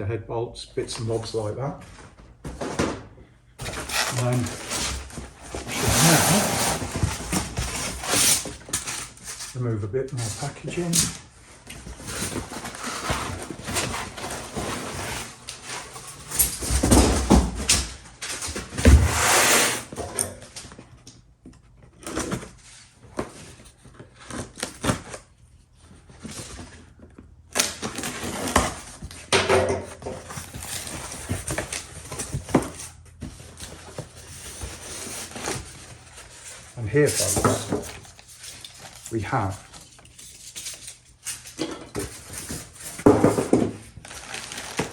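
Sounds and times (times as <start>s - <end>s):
packaging rustling in cardboard box: 3.6s - 9.5s, 11.6s - 17.6s, 30.1s - 44.9s.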